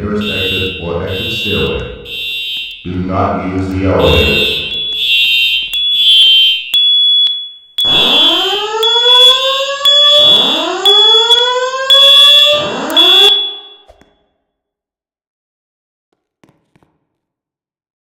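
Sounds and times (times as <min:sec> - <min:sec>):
fire alarm whoop tone: 0:00.0 - 0:03.0, 0:03.6 - 0:14.0
high-pitched tone breaking on and off: 0:04.0 - 0:14.0.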